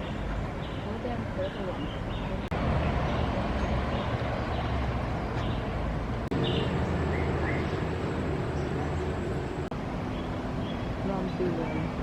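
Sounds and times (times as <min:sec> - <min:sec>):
low outdoor rumble: 0:00.0 - 0:12.0
high bird chirps: 0:06.3 - 0:09.3.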